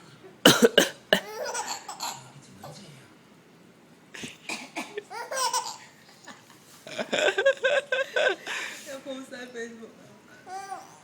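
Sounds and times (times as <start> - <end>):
person coughing: 0.4 - 1.4
baby laughing: 1.2 - 2.3, 4.8 - 6.0.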